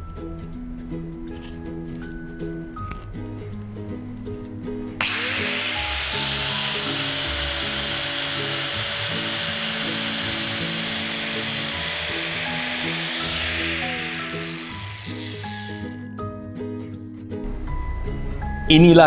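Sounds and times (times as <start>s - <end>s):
background music: 0.0s - 19.0s
power tool whirring: 5.0s - 16.0s.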